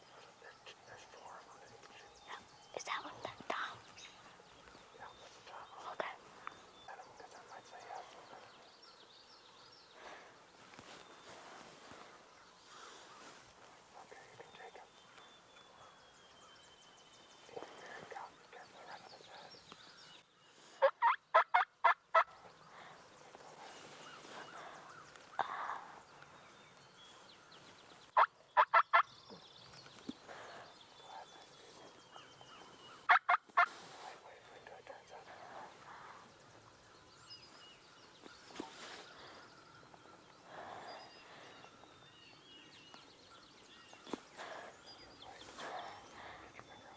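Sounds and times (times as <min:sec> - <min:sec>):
turkey gobbling: 0:20.8 - 0:22.3, 0:28.2 - 0:29.0, 0:33.1 - 0:33.7.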